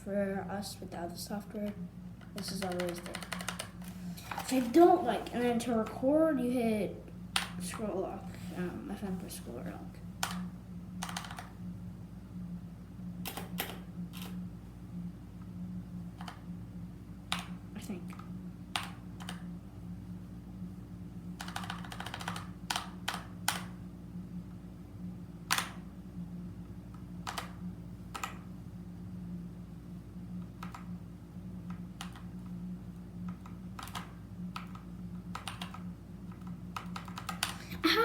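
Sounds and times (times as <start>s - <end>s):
mechanical keyboard clicking: 2.4s - 3.8s, 18.8s - 19.4s, 21.4s - 23.7s, 33.3s - 37.6s.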